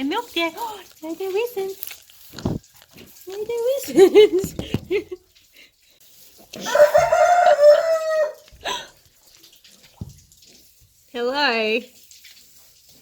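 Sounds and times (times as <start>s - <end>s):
rooster crowing: 6.6s - 8.5s.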